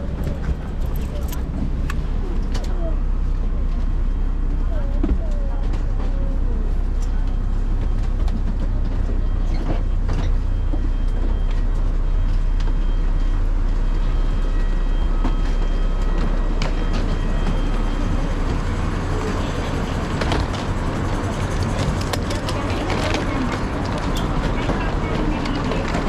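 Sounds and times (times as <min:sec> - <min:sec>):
rattles and clicks: 0:00.0 - 0:02.8, 0:19.1 - 0:26.0
engine and road rumble: 0:00.0 - 0:26.0.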